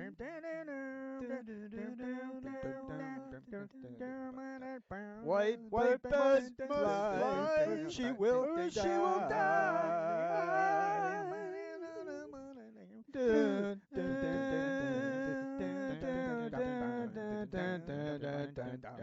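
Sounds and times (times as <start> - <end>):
voices singing wordless held notes: 5.9 - 11.8.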